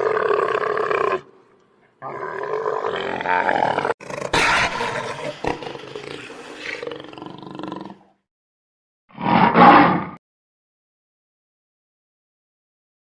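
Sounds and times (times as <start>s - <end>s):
large animal roaring: 0.0s - 1.3s, 2.0s - 8.1s, 9.1s - 10.2s.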